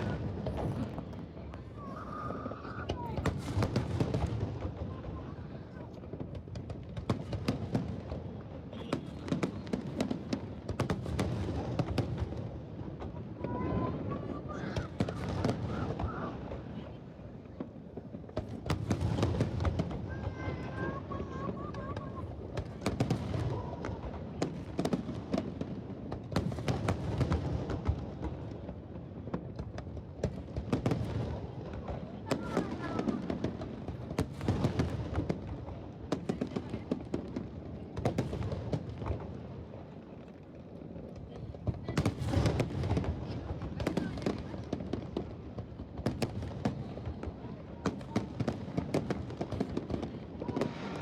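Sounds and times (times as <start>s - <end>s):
crowd voices: 0.0s - 6.5s, 12.6s - 25.8s, 31.3s - 51.0s
fireworks bangs and crackles: 0.0s - 51.0s.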